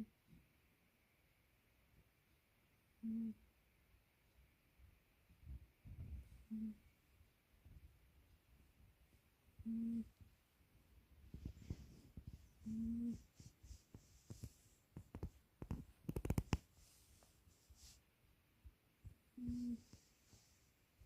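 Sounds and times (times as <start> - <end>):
cat snoring: 3.0 - 3.4, 6.4 - 6.8, 9.6 - 10.2, 11.4 - 13.8, 19.4 - 20.5.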